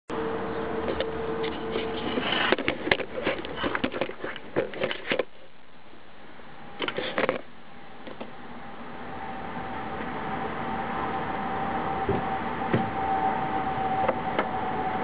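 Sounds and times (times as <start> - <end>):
quiet steady background: 0.4 - 12.2.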